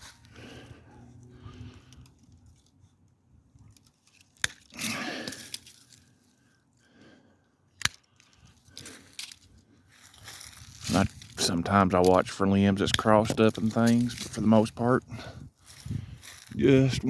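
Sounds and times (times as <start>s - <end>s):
branches rustling: 0.0s - 7.0s, 8.0s - 12.3s, 13.4s - 14.7s, 15.6s - 17.0s
pruning cutters snapping: 4.1s - 5.8s.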